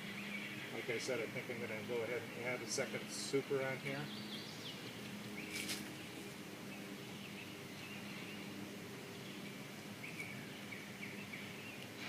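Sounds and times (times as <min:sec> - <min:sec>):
small bird chirping: 0:09.2 - 0:12.0.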